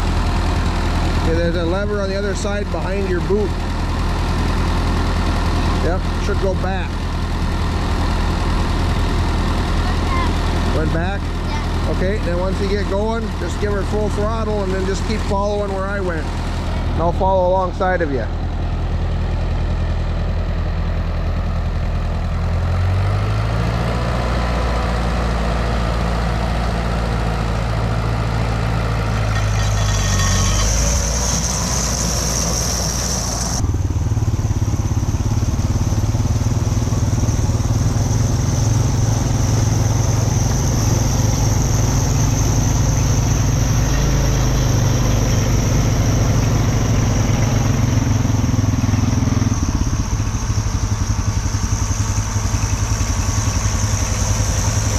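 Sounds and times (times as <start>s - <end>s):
tractor engine running: 0.0s - 54.9s
high steady whine: 29.3s - 36.6s.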